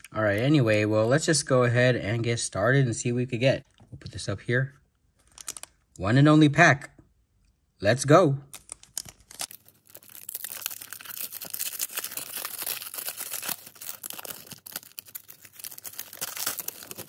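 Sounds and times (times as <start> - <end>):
card pack wrapper ripping and crinkling: 8.6 - 17.0.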